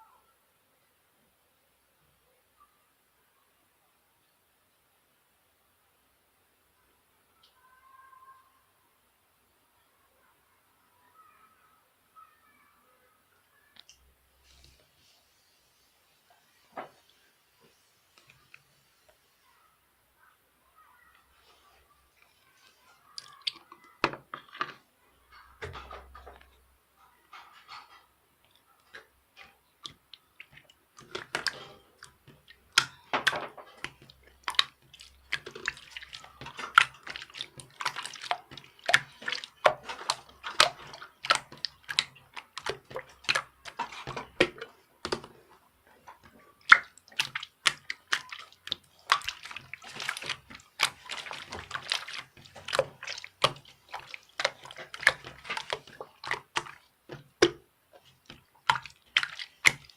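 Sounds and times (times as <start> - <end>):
water splashing and dripping: 27.3 - 59.9.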